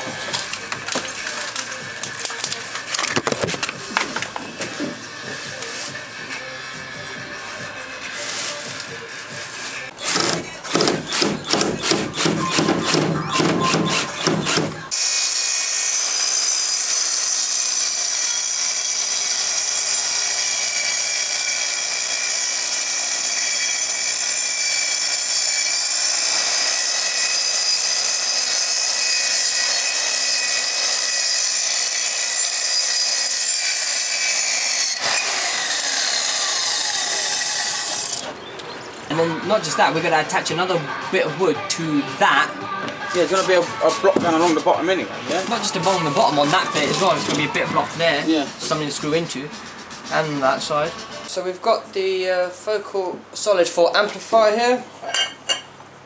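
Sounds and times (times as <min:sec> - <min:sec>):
electric power saw cutting wood: 0:09.8 - 0:38.4.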